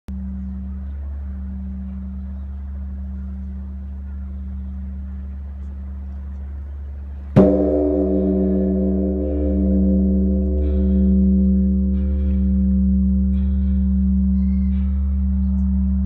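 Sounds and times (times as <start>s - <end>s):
steady low hum: 0.1s - 16.0s
large temple bell ringing: 7.3s - 16.0s.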